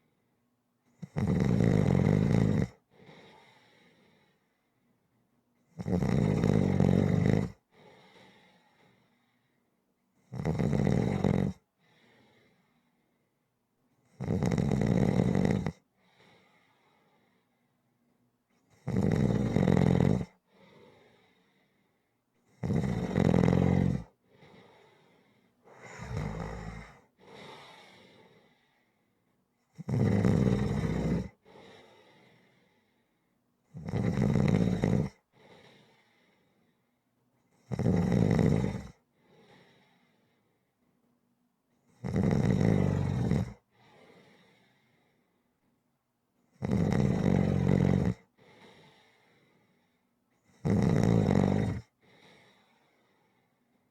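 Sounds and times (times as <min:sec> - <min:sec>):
person snoring: 0:01.0 - 0:02.8, 0:05.8 - 0:07.6, 0:10.3 - 0:11.6, 0:18.8 - 0:20.4, 0:22.6 - 0:24.1, 0:25.7 - 0:28.4, 0:29.8 - 0:31.9, 0:33.8 - 0:35.2, 0:37.7 - 0:39.0, 0:42.0 - 0:43.6, 0:46.6 - 0:48.3, 0:50.6 - 0:51.9
quiet breath out: 0:02.8 - 0:04.9, 0:07.6 - 0:09.7, 0:11.6 - 0:13.3, 0:15.8 - 0:17.8, 0:20.3 - 0:22.2, 0:24.0 - 0:29.2, 0:31.2 - 0:33.4, 0:35.2 - 0:37.0, 0:38.9 - 0:40.7, 0:43.5 - 0:45.5, 0:48.2 - 0:50.2, 0:51.8 - 0:53.9.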